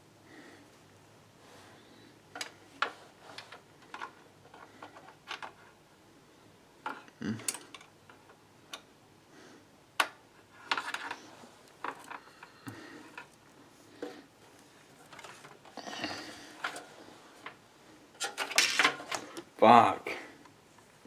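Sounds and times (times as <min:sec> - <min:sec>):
computer parts clicking and rustling: 0:02.3 - 0:05.8, 0:10.0 - 0:13.4, 0:15.0 - 0:15.8, 0:16.5 - 0:19.5.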